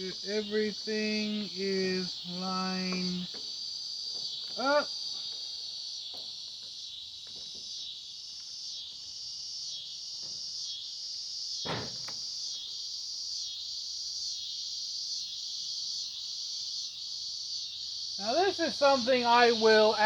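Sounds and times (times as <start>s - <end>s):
insects trilling: 0.0s - 20.0s
loud knock: 11.6s - 12.2s.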